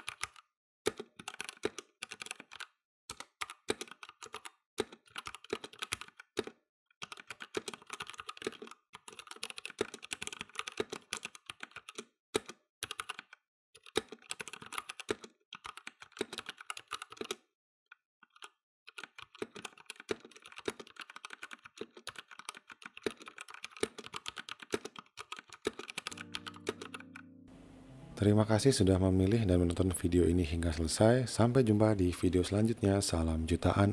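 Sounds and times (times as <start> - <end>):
mechanical keyboard typing: 0.0 - 17.5, 18.2 - 27.2.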